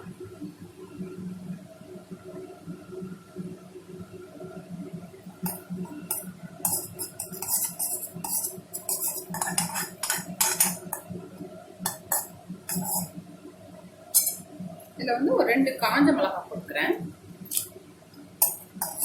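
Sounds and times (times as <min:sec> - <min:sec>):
seeds crackling in hot oil: 0:05.3 - 0:13.2.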